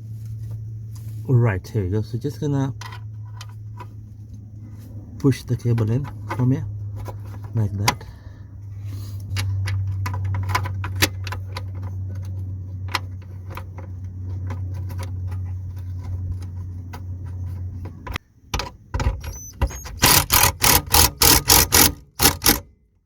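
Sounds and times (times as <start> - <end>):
steady low hum: 0.0 - 23.0
metal clicking and rattling: 5.2 - 8.1, 9.2 - 22.7.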